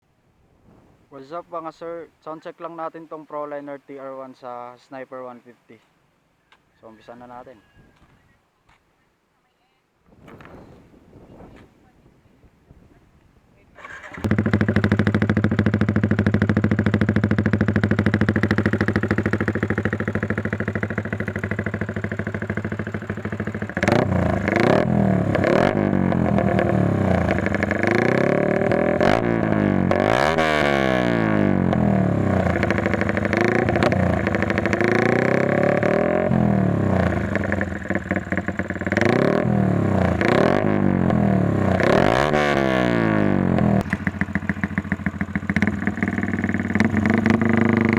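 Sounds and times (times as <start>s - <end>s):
motorcycle engine idling: 13.8s - 47.9s
motorcycle engine revving: 13.8s - 47.9s.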